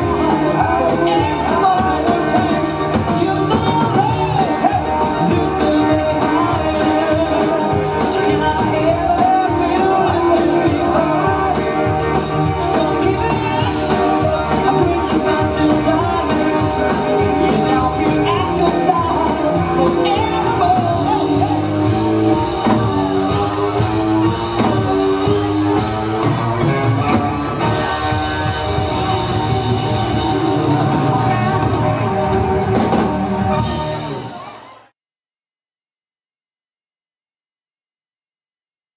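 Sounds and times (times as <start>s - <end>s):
drum kit: 0.0s - 34.8s
person singing: 0.0s - 34.8s
live rock music: 0.0s - 34.9s.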